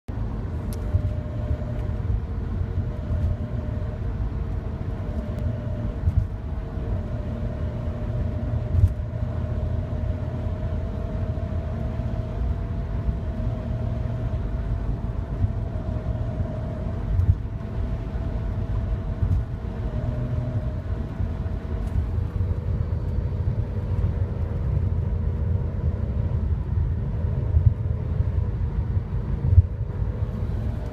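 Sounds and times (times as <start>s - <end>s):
car engine running: 0.1s - 30.9s.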